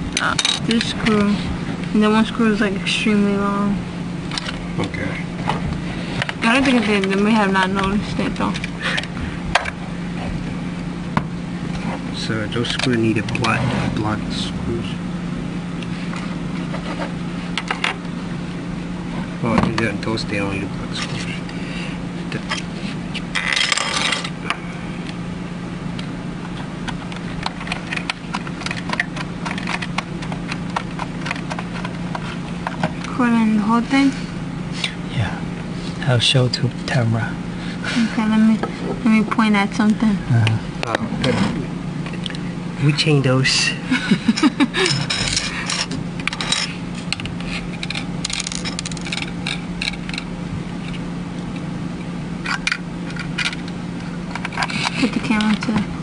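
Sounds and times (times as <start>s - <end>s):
steady low hum: 0.0s - 56.0s.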